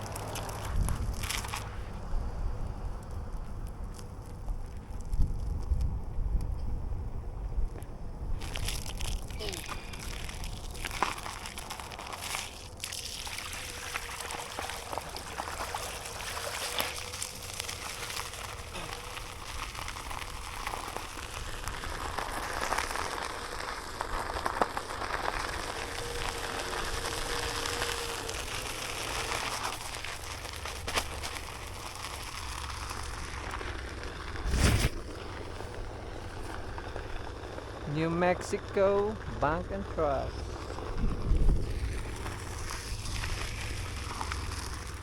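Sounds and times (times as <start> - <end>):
faint steady whine: 0.0 - 45.0
tyre and wind hiss: 12.0 - 45.0.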